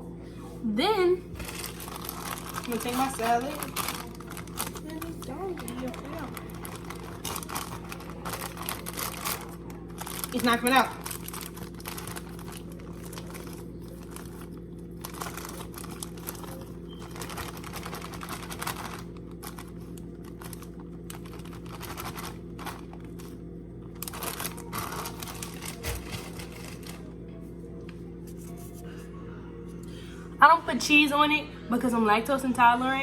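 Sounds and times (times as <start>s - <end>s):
low electrical hum: 0.0s - 33.0s
crinkling and rustling: 1.4s - 27.1s.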